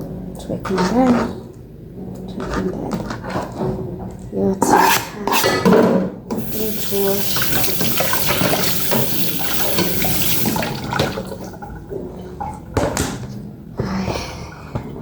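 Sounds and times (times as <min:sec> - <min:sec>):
tap water running into sink: 0:06.4 - 0:13.3.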